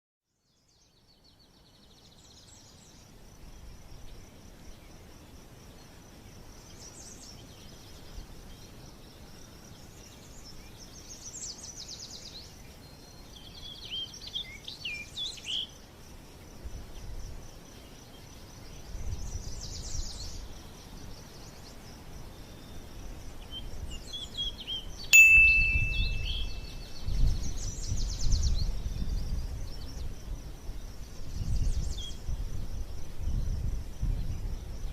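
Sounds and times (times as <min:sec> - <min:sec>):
birdlike chirping and trills: 0:23.5 - 0:29.0
sharp ding: 0:25.2 - 0:26.9.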